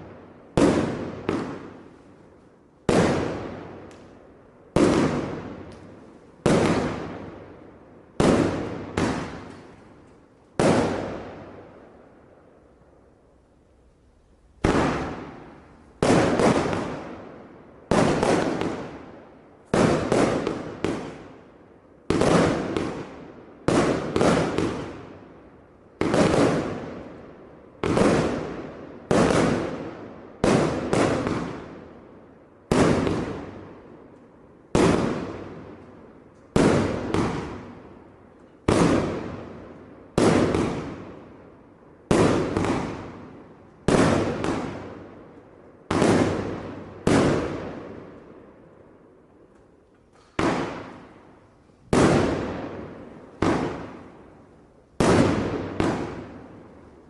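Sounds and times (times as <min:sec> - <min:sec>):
fireworks bangs: 0:00.0 - 0:02.1, 0:02.8 - 0:07.5, 0:08.2 - 0:09.9, 0:10.6 - 0:11.7, 0:14.6 - 0:17.3, 0:17.9 - 0:21.3, 0:22.1 - 0:25.2, 0:26.0 - 0:27.2, 0:27.8 - 0:31.8, 0:32.7 - 0:33.7, 0:34.7 - 0:35.9, 0:36.5 - 0:37.9, 0:38.6 - 0:41.3, 0:42.0 - 0:45.2, 0:45.8 - 0:48.2, 0:50.2 - 0:51.2, 0:51.9 - 0:56.9.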